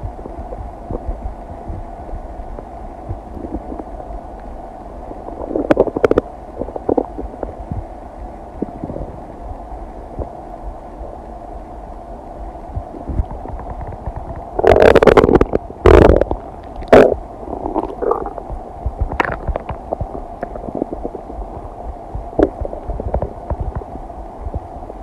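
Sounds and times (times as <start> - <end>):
stomach gurgling: 0.0 - 1.8, 2.5 - 4.5, 5.1 - 7.9, 8.6 - 9.2, 12.8 - 25.0.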